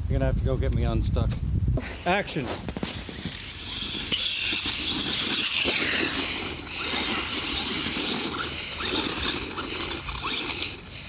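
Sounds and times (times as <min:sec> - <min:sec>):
toy truck electric motor whir: 0:03.0 - 0:11.0.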